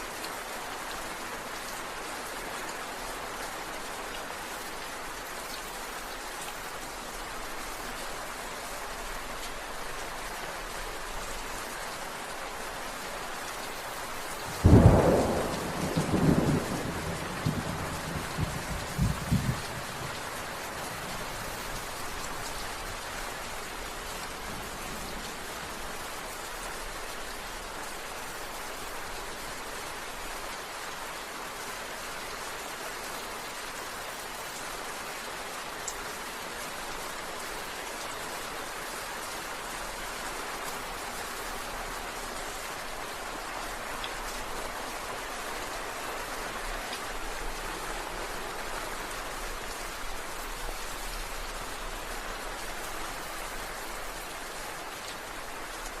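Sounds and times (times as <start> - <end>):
heavy rain falling: 0.0 - 56.0
low rumble of thunder: 14.5 - 21.6.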